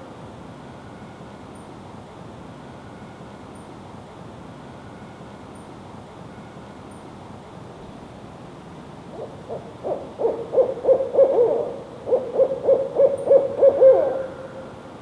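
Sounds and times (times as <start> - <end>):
owl hooting: 9.1 - 14.8.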